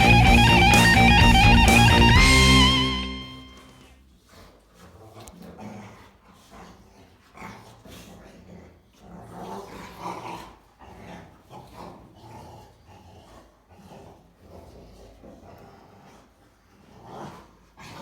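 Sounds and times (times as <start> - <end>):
dogs growling: 4.3 - 18.0.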